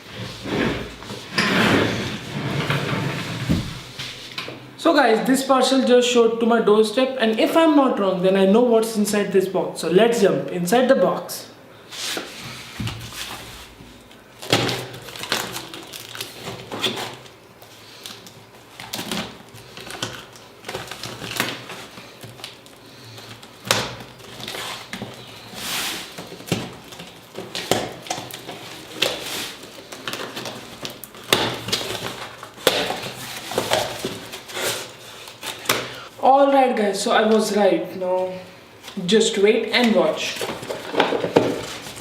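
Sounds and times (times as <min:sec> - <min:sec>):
cardboard parcel knocks and rustles: 0:03.5 - 0:04.0, 0:40.4 - 0:42.0.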